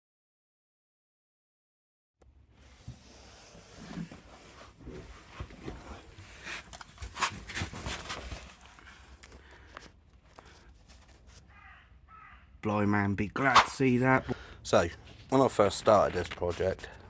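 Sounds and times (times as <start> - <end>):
rustling handling noise: 2.4 - 12.3, 13.4 - 17.0.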